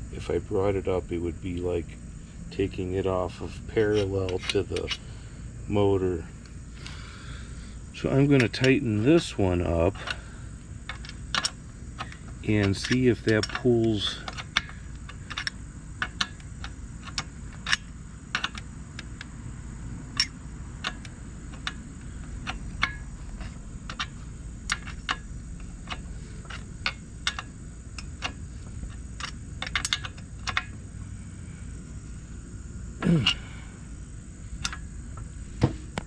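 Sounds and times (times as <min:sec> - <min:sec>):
wrench clicking: 0:03.8 - 0:05.1, 0:08.0 - 0:19.4, 0:20.0 - 0:31.0, 0:33.2 - 0:33.6, 0:34.6 - 0:35.3.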